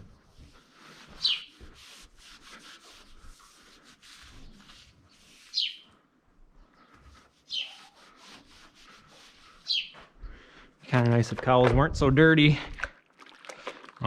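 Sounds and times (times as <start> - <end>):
pipe being scrubbed by hand: 0.0 - 6.0, 6.8 - 10.1
bird chirping: 1.2 - 1.6, 4.4 - 5.9, 6.6 - 8.0, 9.6 - 10.0.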